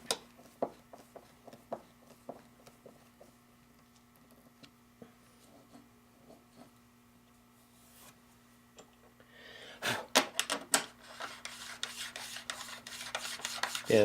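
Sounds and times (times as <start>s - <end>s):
bit scraping and rasping: 11.0s - 14.0s.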